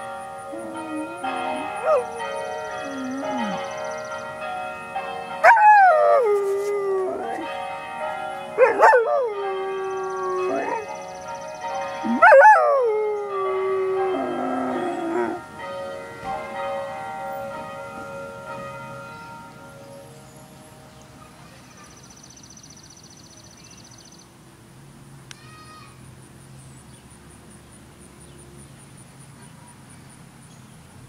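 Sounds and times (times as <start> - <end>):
church bells ringing: 0.0 - 22.0
puppy howling: 0.5 - 2.2, 2.8 - 3.7, 5.4 - 7.5, 8.6 - 11.0, 12.0 - 15.4.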